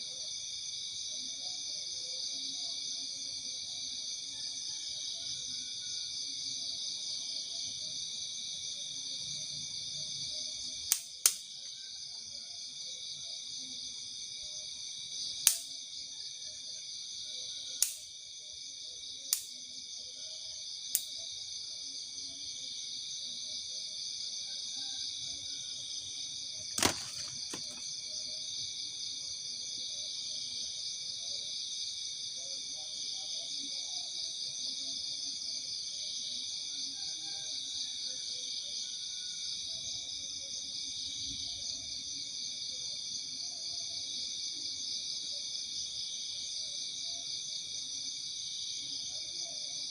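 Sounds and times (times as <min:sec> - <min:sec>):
crickets shrilling: 0:26.6 - 0:28.1
sharp clicks or knocks: 0:26.8 - 0:27.8.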